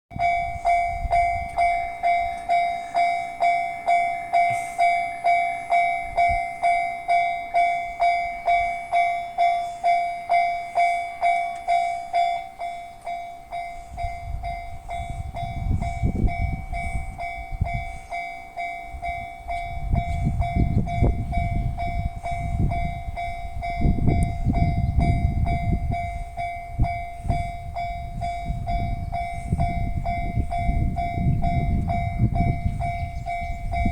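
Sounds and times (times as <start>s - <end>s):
level crossing warning bell: 0.1s - 33.9s
train wheels clacking over rails: 0.2s - 18.4s.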